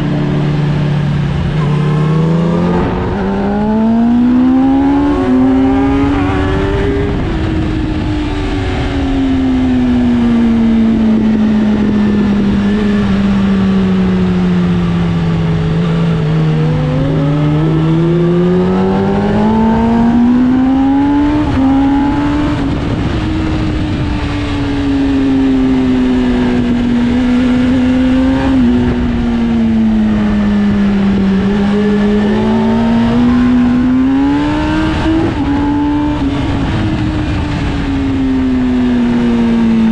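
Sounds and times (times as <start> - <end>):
sport bike engine: 0.0 - 39.9
wind rush: 0.0 - 39.9.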